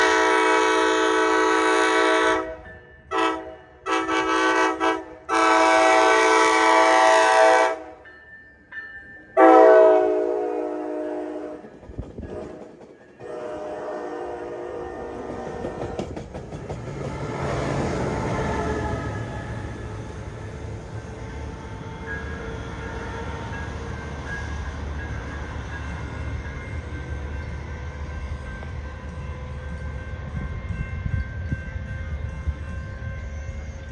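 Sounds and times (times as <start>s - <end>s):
locomotive air horn blasts: 0.0s - 7.9s, 9.4s - 11.6s, 13.2s - 15.8s
train rumbling on rails: 0.0s - 33.9s.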